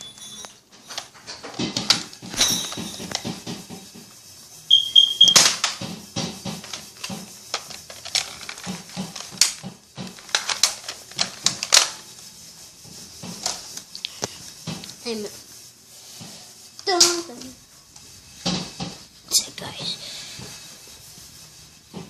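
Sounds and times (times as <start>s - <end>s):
short high beeps: 4.7s - 5.4s
plastic blaster clicks and clacks: 6.6s - 12.0s.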